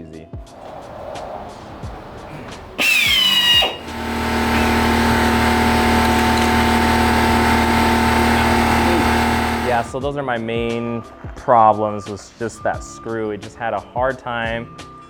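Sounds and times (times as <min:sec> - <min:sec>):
power drill whining: 0:00.6 - 0:09.9.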